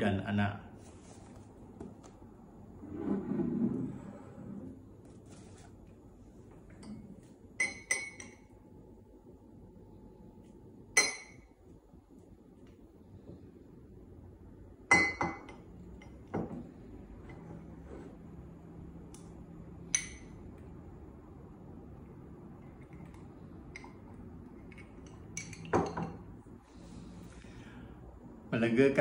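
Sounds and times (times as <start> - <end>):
glass bottle clinking: 7.6 - 8.4, 14.9 - 15.6, 24.6 - 26.2.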